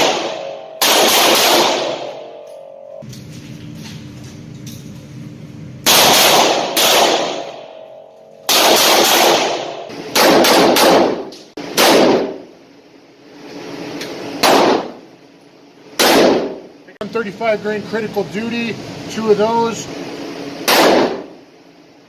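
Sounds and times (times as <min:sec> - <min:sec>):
pistol shots echoing: 0:00.0 - 0:02.5, 0:05.8 - 0:12.5, 0:14.4 - 0:15.0, 0:16.0 - 0:16.7, 0:20.6 - 0:21.4.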